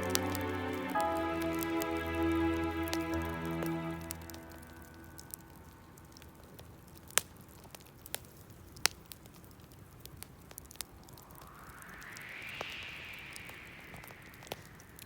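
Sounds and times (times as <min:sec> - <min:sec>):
campfire crackling and popping: 0:00.0 - 0:01.9, 0:02.8 - 0:12.7
low fire hiss: 0:00.0 - 0:15.0.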